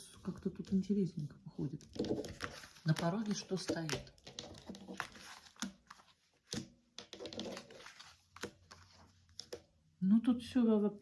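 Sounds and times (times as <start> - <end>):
cards clicking on a table: 2.0 - 9.7.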